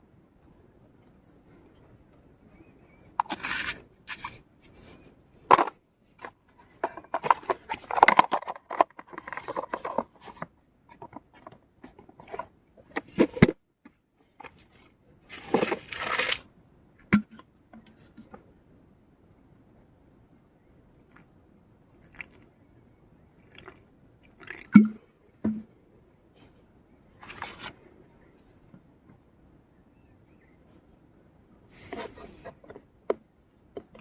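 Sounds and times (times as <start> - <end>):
tearing and rustling: 15.3 - 16.5.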